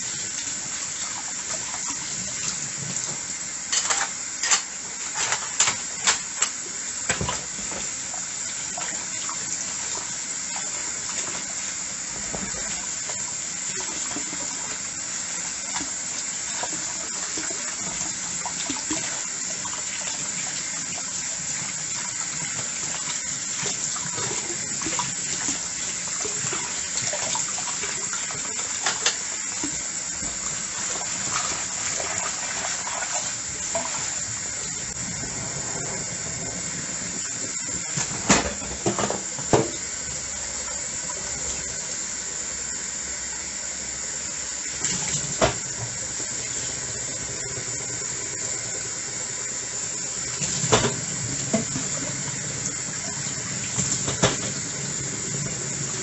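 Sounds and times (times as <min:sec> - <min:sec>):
tap water running into sink: 0:00.0 - 0:56.0.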